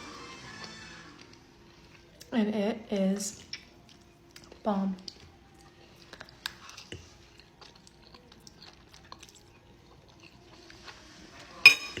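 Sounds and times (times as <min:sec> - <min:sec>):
person chewing: 0:03.5 - 0:11.0.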